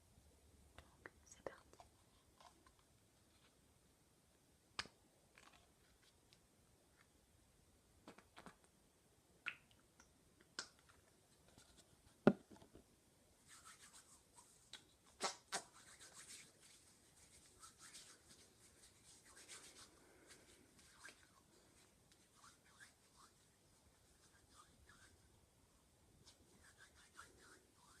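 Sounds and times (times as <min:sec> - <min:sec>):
soft scratchy rustling: 0:00.8 - 0:03.7, 0:05.3 - 0:07.1, 0:15.6 - 0:25.3, 0:26.1 - 0:28.0.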